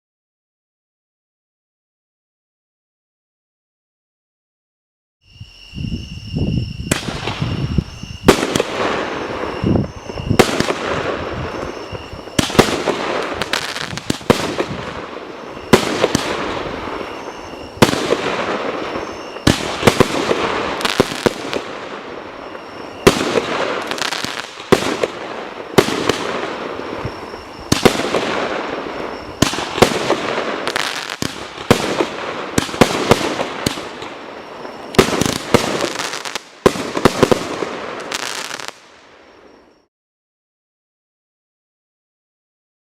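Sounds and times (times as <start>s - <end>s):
fireworks bangs: 6.6s - 39.7s.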